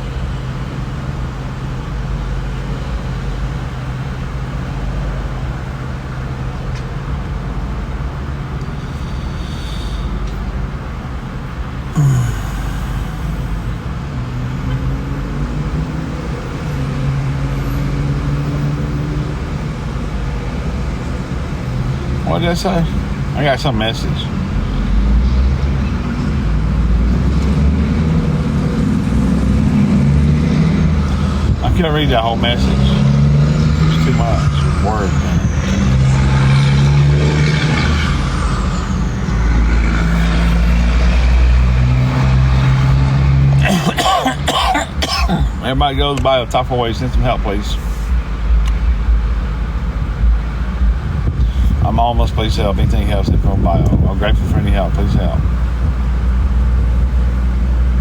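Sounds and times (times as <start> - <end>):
vehicle rumble: 0.0 - 58.0
low hum drifting in pitch: 7.9 - 17.6, 24.2 - 43.7.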